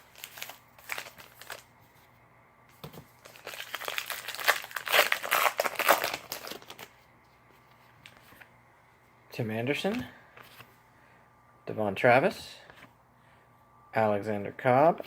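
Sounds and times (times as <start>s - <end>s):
plastic wrapper crinkling and tearing: 0.0s - 1.7s, 3.2s - 7.0s.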